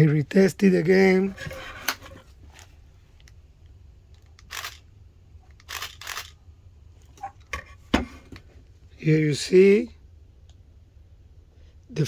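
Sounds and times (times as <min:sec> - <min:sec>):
camera handling clicks: 0:04.4 - 0:04.8, 0:05.5 - 0:06.4
camera shutter snap: 0:04.4 - 0:04.8, 0:05.6 - 0:06.4.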